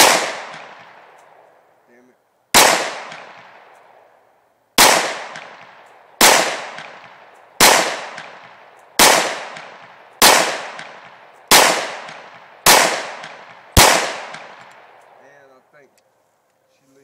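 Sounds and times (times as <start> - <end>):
pistol shots with echo: 0.0 - 1.5, 2.5 - 4.1, 4.8 - 15.2.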